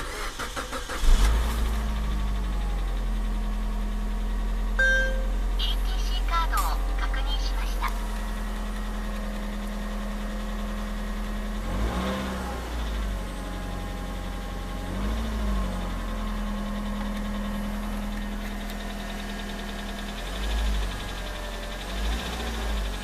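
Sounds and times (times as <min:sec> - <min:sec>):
car engine idling with a rattle: 0:00.0 - 0:23.0.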